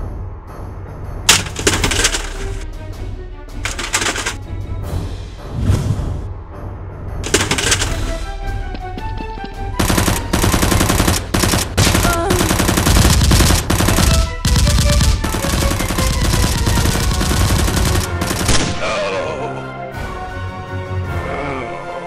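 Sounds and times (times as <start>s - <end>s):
background music: 0.0s - 22.0s
rapid automatic gunfire: 1.3s - 2.6s, 3.6s - 4.4s, 7.2s - 8.2s, 9.8s - 18.8s.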